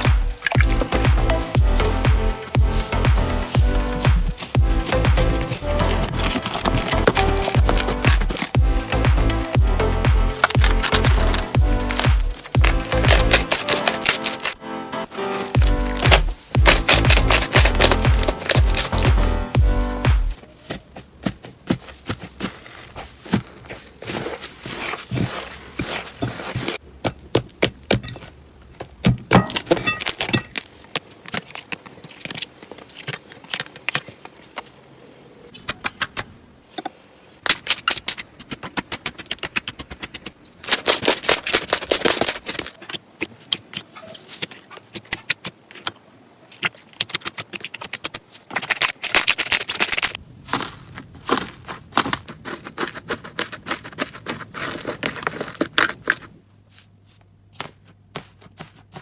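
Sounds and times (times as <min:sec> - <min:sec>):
slime crackling and popping: 0:10.4 - 0:14.6, 0:15.6 - 0:19.4.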